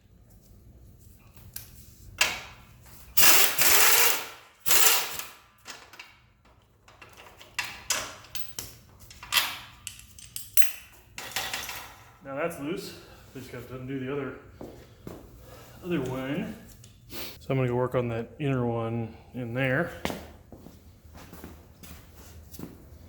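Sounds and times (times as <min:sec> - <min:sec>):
pneumatic wrench spinning: 0:03.2 - 0:05.4.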